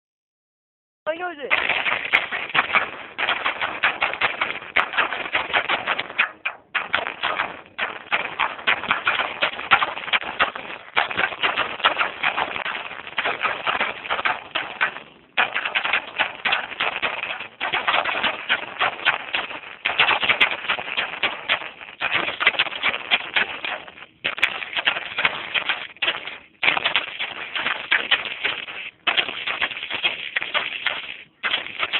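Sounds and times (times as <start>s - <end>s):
rapid clicking and rattling: 1.5s - 31.9s.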